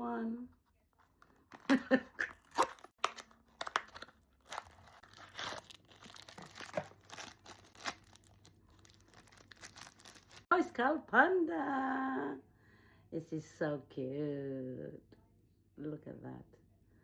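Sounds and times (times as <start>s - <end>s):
packaging crinkling and ripping: 2.1s - 10.5s.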